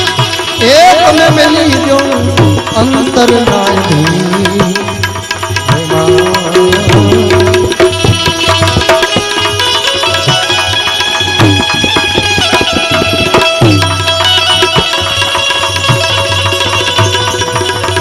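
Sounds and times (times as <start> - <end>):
melodic accompaniment: 0.0 - 18.0
tabla playing a busy rhythm: 0.0 - 18.0.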